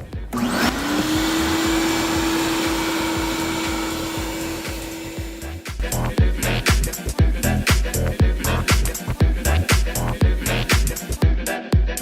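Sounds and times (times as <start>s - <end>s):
background music with a beat: 0.0s - 12.0s
shop vacuum running: 0.2s - 5.8s.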